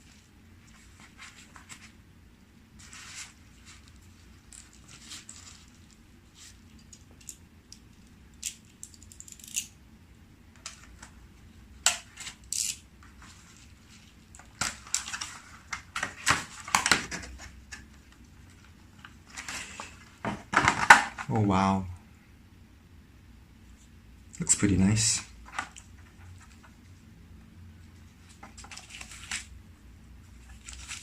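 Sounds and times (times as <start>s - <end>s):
packaging crinkling and rustling: 2.8s - 7.0s, 12.0s - 21.3s, 28.2s - 29.5s, 30.4s - 31.0s.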